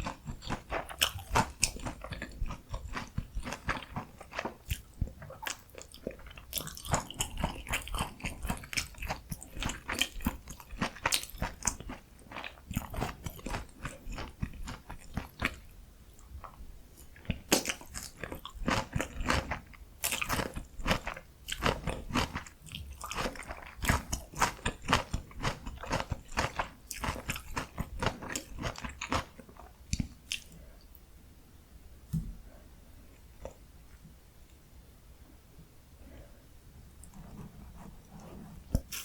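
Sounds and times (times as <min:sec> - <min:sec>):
crunching and chewing fried food: 0:00.0 - 0:30.8.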